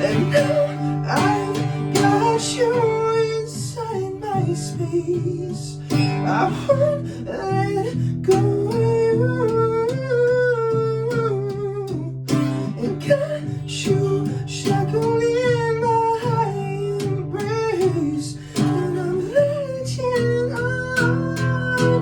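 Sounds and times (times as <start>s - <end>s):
acoustic guitar: 0.0s - 22.0s
person singing: 0.0s - 22.0s.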